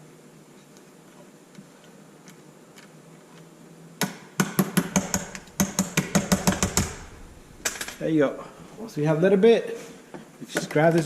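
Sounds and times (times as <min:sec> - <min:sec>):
hammer tapping metal shaft: 0:04.4 - 0:07.2.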